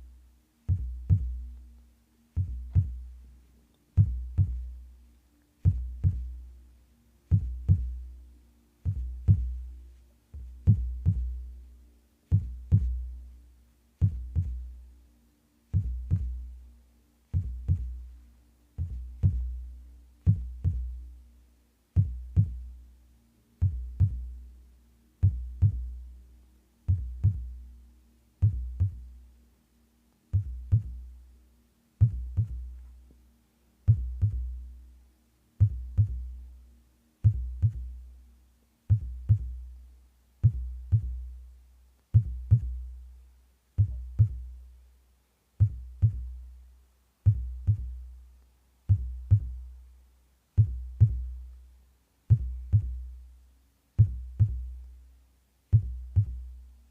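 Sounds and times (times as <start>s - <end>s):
heartbeat deep thumps: 0.7s - 1.5s, 2.3s - 3.2s, 4.0s - 4.8s, 5.6s - 6.4s, 7.3s - 8.1s, 8.8s - 9.8s, 10.4s - 11.5s, 12.3s - 13.2s, 14.0s - 14.8s, 15.7s - 16.5s, 17.3s - 18.2s, 18.8s - 21.1s, 22.0s - 22.8s, 23.6s - 24.4s, 25.2s - 26.0s, 26.8s - 27.6s, 28.4s - 29.2s, 30.3s - 31.1s, 32.0s - 32.9s, 33.9s - 34.6s, 35.6s - 36.4s, 37.2s - 38.1s, 38.9s - 39.8s, 40.4s - 41.4s, 42.1s - 43.0s, 43.8s - 44.6s, 45.6s - 46.4s, 47.3s - 48.1s, 48.9s - 49.7s, 50.6s - 51.5s, 52.3s - 53.2s, 54.0s - 54.8s, 55.7s - 56.5s.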